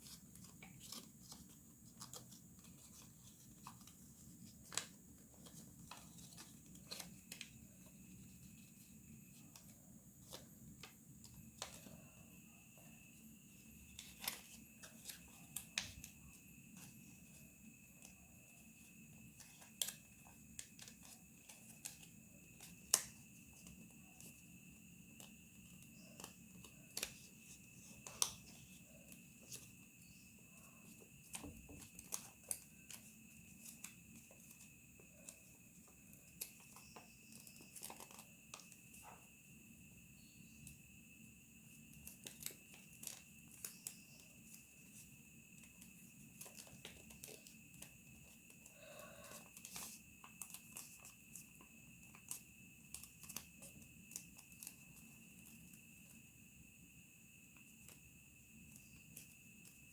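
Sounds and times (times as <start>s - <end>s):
paper crinkling and creasing: 0.0s - 10.4s, 36.4s - 38.8s.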